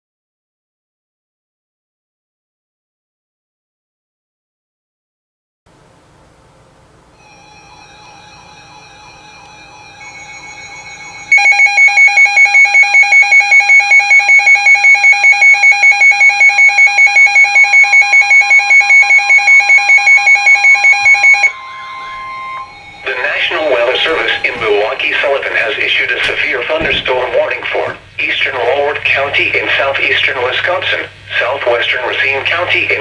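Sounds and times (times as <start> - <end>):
shrill pulsing alarm beeping: 7.2 - 33.0.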